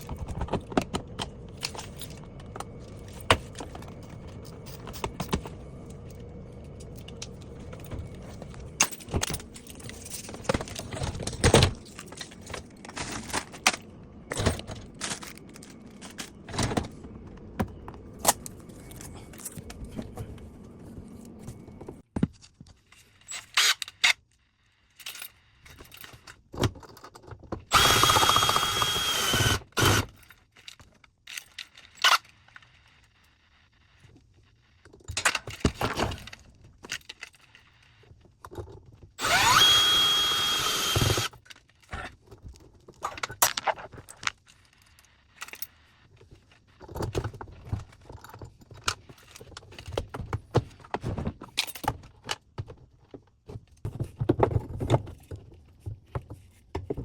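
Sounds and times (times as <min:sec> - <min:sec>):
power tool running: 0:27.7 - 0:30.1, 0:39.2 - 0:41.3.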